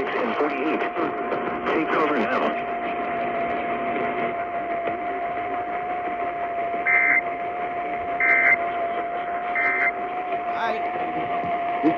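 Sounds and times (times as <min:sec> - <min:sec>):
radio hiss and static: 0:00.0 - 0:11.9
steady whistling tone: 0:06.8 - 0:07.2, 0:08.2 - 0:08.6
two-tone data burst warble: 0:06.8 - 0:07.2, 0:08.2 - 0:08.6, 0:09.5 - 0:10.0.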